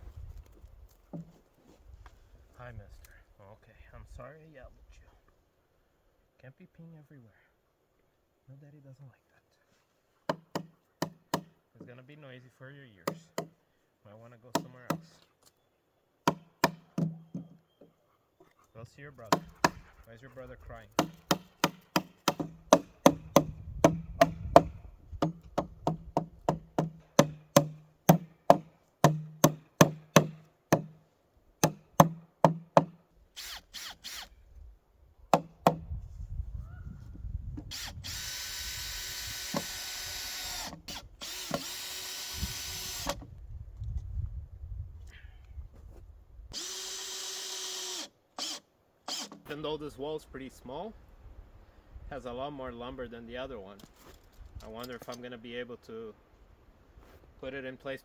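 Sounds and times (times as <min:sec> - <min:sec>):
hammer driving nails into wood: 0:10.3 - 0:11.5, 0:16.2 - 0:17.6, 0:19.3 - 0:19.8, 0:21.0 - 0:31.0, 0:31.6 - 0:33.0, 0:35.4 - 0:35.8, 0:39.4 - 0:39.8
cordless drill driving screws: 0:33.4 - 0:34.3, 0:37.7 - 0:43.2, 0:46.5 - 0:49.5.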